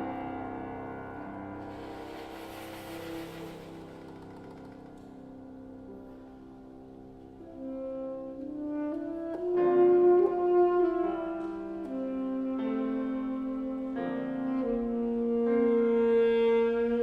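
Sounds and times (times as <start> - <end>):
alto saxophone slow notes: 1.6 - 5.2, 7.4 - 17.0.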